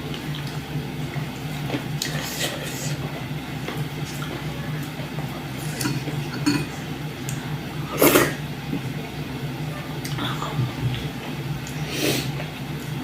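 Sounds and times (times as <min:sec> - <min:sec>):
steady low hum: 0:00.0 - 0:13.0
dishes and utensils clinking: 0:05.7 - 0:06.8.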